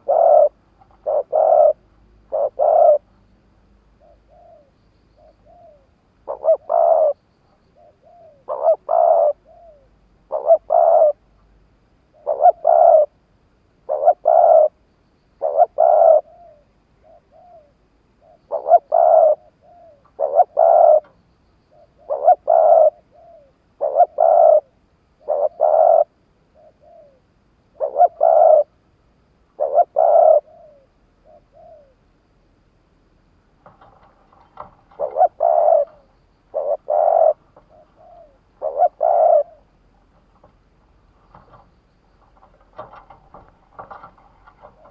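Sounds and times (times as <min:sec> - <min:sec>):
dove cooing: 0:00.0 - 0:03.1, 0:04.0 - 0:07.2, 0:07.8 - 0:11.2, 0:12.1 - 0:13.2, 0:13.8 - 0:14.8, 0:15.4 - 0:28.8, 0:29.6 - 0:32.0, 0:33.6 - 0:44.9.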